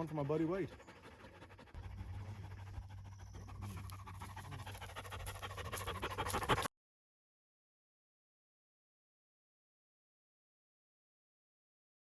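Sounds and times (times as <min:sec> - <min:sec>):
dog panting: 0:00.0 - 0:06.7
low rumble: 0:00.8 - 0:06.7.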